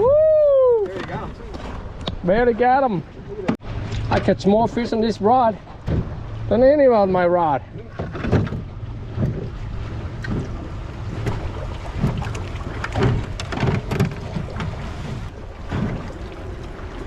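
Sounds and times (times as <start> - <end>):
wind rumbling on microphone: 0.0 - 2.2, 8.0 - 17.0.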